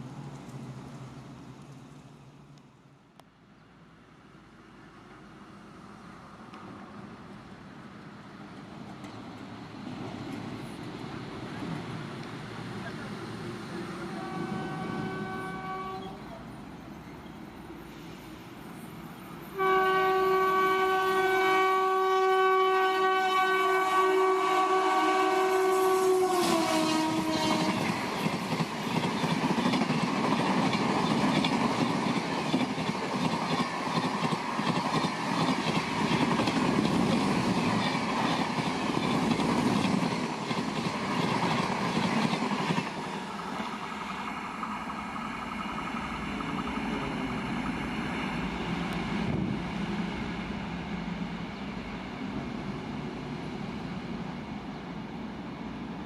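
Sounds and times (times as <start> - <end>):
train coaches rushing past: 4.8 - 56.0
train horn: 13.9 - 16.4, 19.5 - 28.0.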